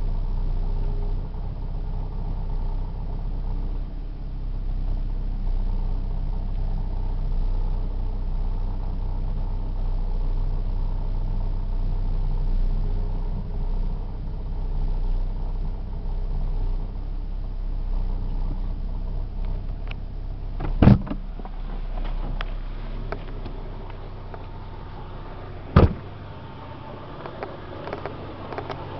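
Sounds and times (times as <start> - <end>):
car engine droning: 0.0 - 28.9
loud clunk: 20.6 - 22.4, 25.7 - 26.1.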